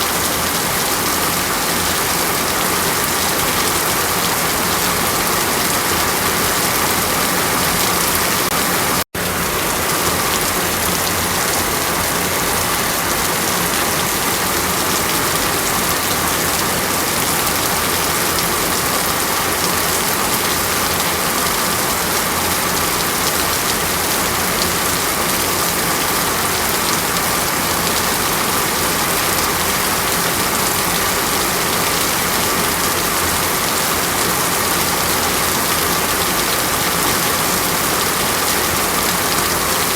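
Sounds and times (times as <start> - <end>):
rushing water: 0.0 - 39.9.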